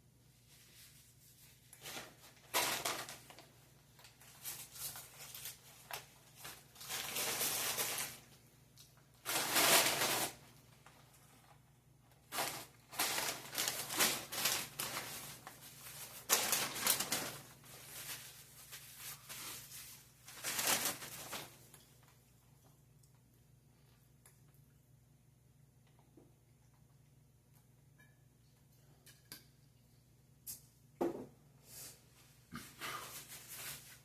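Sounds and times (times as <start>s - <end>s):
food wrapper crinkling: 1.8s - 11.6s, 12.2s - 22.1s.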